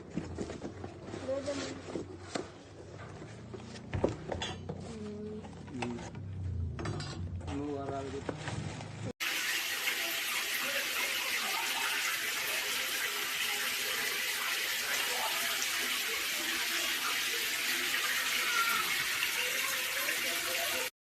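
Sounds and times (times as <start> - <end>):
water running from heater outlet: 9.2 - 20.9.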